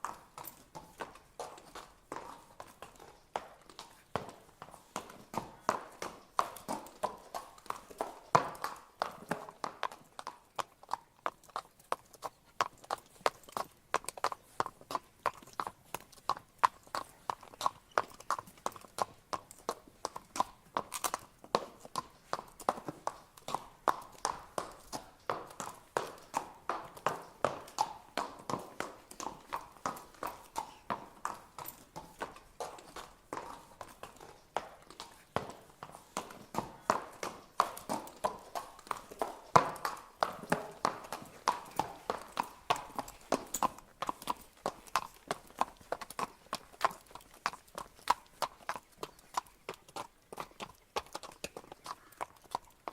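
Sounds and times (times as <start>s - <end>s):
horse hooves clip-clopping: 0.0s - 52.9s.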